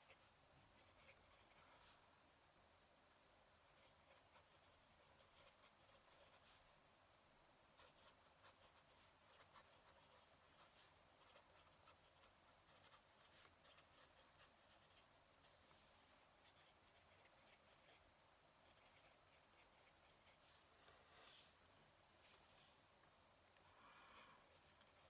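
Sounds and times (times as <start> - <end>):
pen nib scratching on paper: 0.0 - 2.0, 3.6 - 6.7, 7.7 - 21.4, 23.6 - 25.0.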